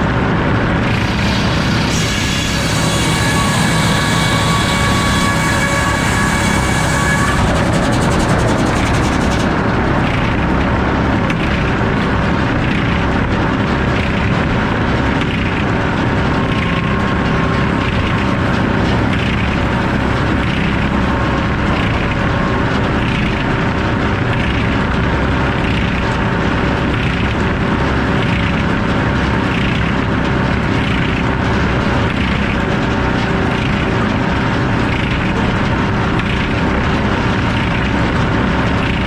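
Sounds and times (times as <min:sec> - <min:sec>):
circular saw cutting wood: 0:00.8 - 0:13.1.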